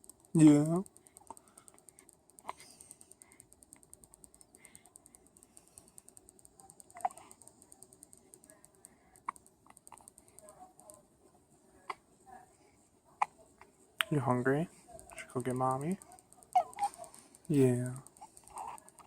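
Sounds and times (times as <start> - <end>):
fast faint ticking: 0.0 - 19.0
baby hiccuping: 16.5 - 16.9, 18.5 - 18.8.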